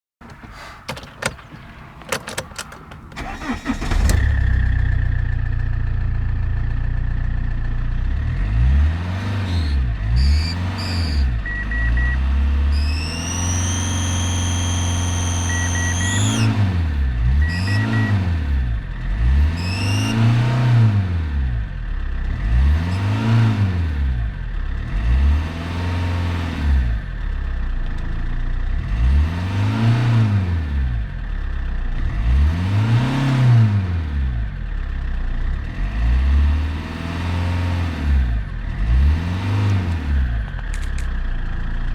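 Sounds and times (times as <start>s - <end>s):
starter clicks: 0.2s - 4.2s, 40.5s - 41.2s
diesel engine idling and revving: 0.2s - 41.9s
high whistle over engine: 10.2s - 16.7s, 17.4s - 18.2s, 19.6s - 20.3s.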